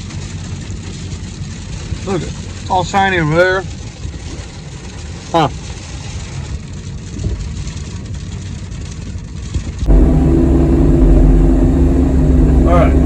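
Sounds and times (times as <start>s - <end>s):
excavator diesel engine rumbling: 9.9s - 13.0s.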